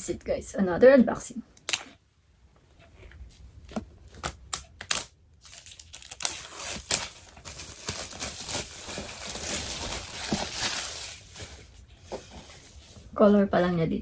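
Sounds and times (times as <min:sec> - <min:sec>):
plastic wrap tearing and crinkling: 0:04.1 - 0:11.7.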